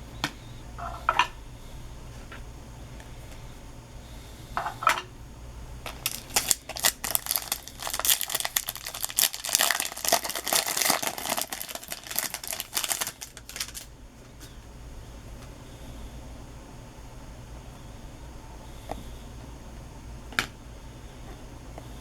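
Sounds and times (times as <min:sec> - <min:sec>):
foil wrapper crinkling: 0:05.9 - 0:13.9.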